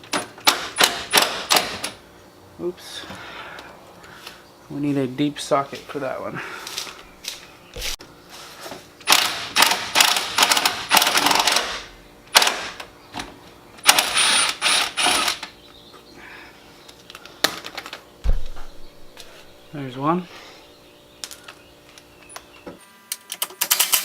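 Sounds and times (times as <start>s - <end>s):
impact wrench rattling: 9.0s - 12.9s.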